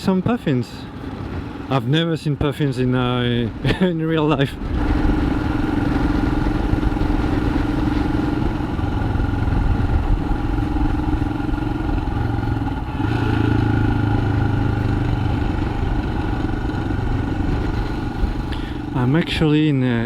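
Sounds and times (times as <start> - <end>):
motorcycle engine running: 4.6 - 20.0.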